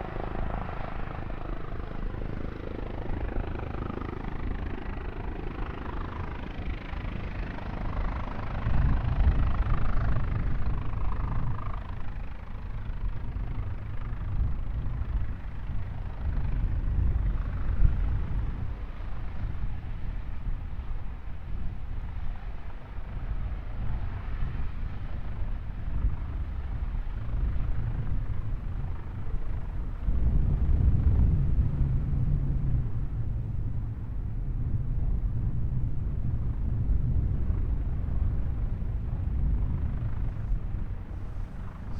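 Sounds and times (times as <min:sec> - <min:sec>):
jet engines rumbling: 0:38.4 - 0:41.9.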